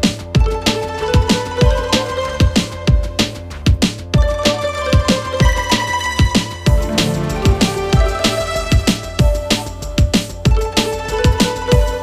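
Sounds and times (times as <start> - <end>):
held synth notes: 6.5 - 9.9
kick drum beat: 6.7 - 9.5.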